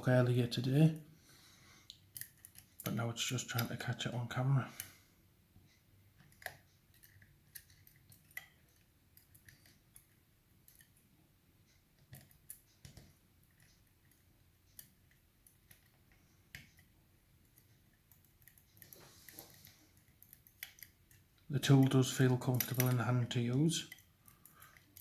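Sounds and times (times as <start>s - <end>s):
lock pick clicking and scraping: 1.9s - 2.9s, 6.2s - 11.0s, 12.0s - 14.2s, 14.8s - 23.0s, 23.9s - 25.0s.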